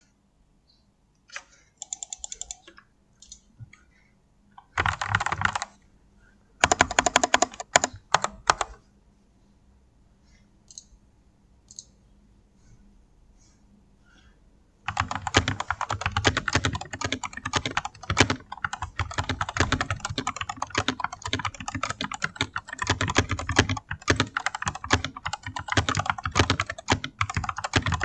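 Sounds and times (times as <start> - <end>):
mechanical keyboard typing: 1.8 - 3.4, 4.6 - 5.7, 6.6 - 8.8, 14.9 - 28.0.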